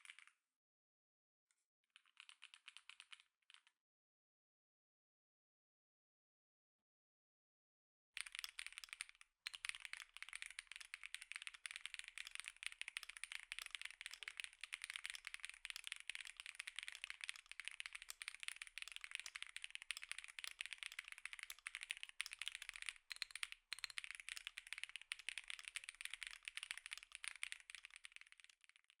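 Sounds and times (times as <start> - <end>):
fast typing on keyboard: 8.2 - 29.0.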